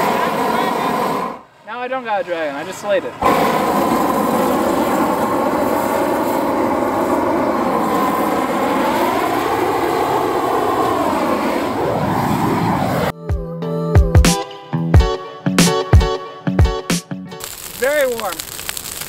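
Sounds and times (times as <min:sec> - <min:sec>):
leaf blower engine running: 0:00.0 - 0:01.4, 0:02.5 - 0:10.9, 0:17.4 - 0:19.0.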